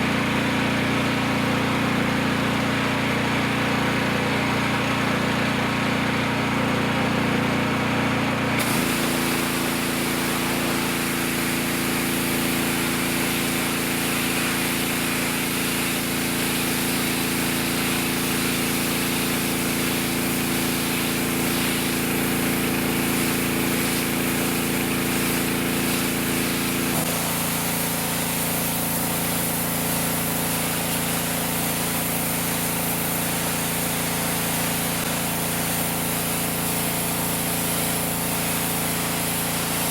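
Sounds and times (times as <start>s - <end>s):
pressure washer engine hum: 0.0s - 39.9s
high-pressure water spray hissing: 8.6s - 39.9s.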